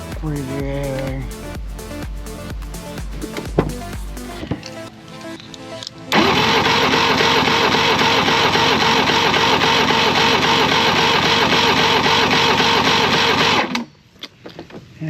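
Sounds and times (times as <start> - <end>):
starter motor cranking engine: 6.1 - 13.8.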